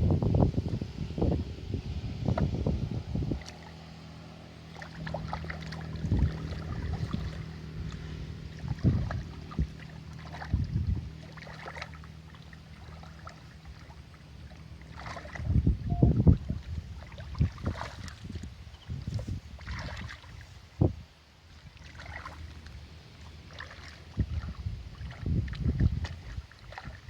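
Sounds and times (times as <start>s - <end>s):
wind gusting on microphone: 0.0s - 4.2s, 4.9s - 11.2s, 15.2s - 21.1s, 24.0s - 27.0s
faint low hum: 0.0s - 27.0s
small knocks and splashes: 3.3s - 3.8s, 4.5s - 15.6s, 16.4s - 27.0s.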